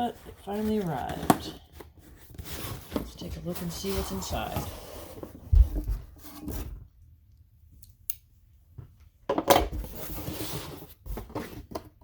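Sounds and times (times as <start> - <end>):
packaging scraping and rustling: 0.0 - 5.4, 9.8 - 12.0.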